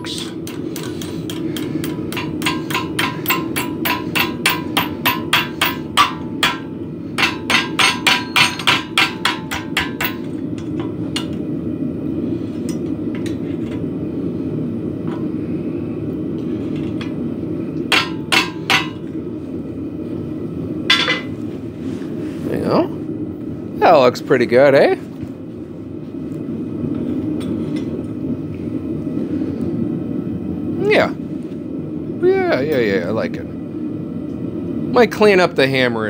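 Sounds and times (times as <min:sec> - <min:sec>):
hammer striking steel on anvil: 0:00.0 - 0:11.4, 0:17.9 - 0:19.1.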